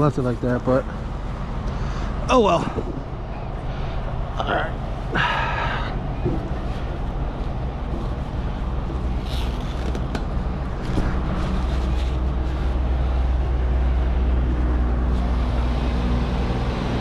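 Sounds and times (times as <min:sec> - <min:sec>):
large diesel engine idling: 0:00.0 - 0:09.2.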